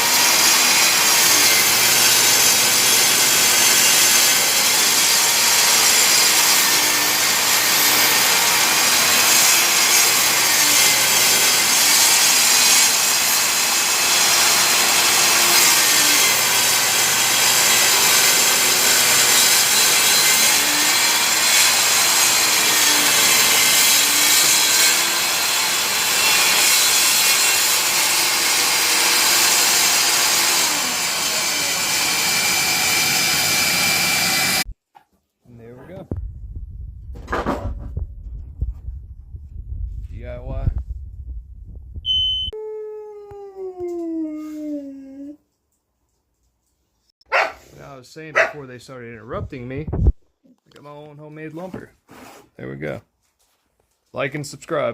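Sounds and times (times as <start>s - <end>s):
table saw ripping a plank: 0.0s - 34.7s.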